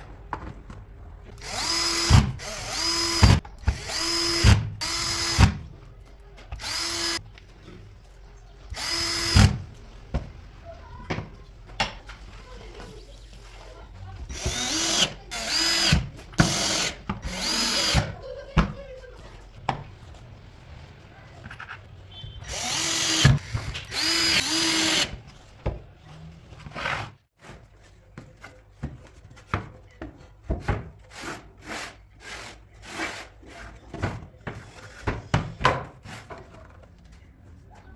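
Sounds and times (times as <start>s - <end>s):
power drill running: 1.4s - 5.6s, 6.5s - 7.2s, 8.7s - 9.6s, 14.3s - 18.1s, 22.4s - 25.2s.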